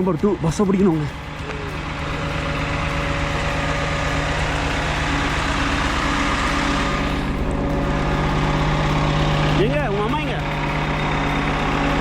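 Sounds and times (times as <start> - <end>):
bus engine idling: 0.0 - 12.0.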